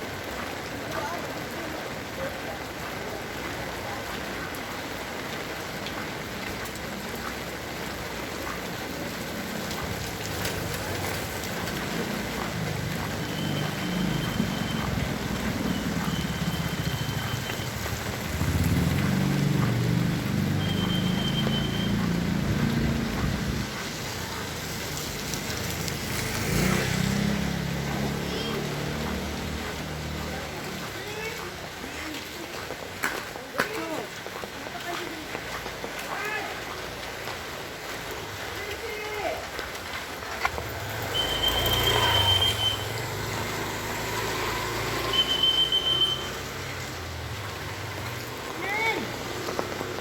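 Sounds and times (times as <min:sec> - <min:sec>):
heavy rain: 0:00.0 - 0:50.0
vehicle engine rumbling past: 0:11.5 - 0:30.9.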